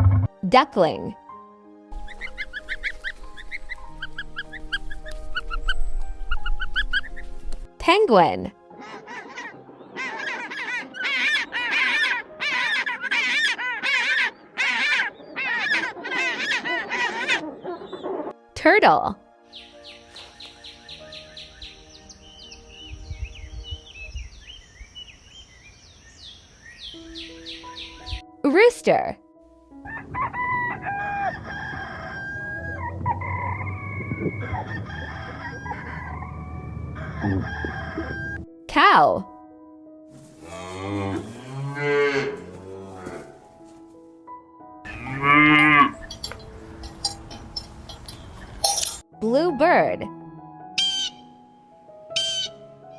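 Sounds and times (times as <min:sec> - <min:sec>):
penguin calling: 0:08.8 - 0:18.3, 0:29.9 - 0:38.4, 0:44.9 - 0:48.6
rooster crowing: 0:29.8 - 0:38.4, 0:44.9 - 0:48.7.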